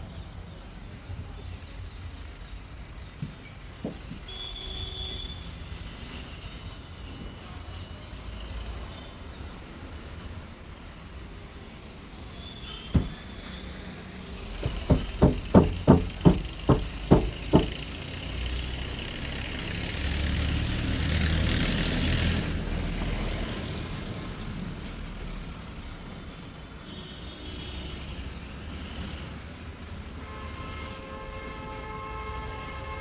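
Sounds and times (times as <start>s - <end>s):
sharp taps: 13.0s - 13.4s, 14.5s - 17.9s
road vehicle passing: 13.2s - 26.2s.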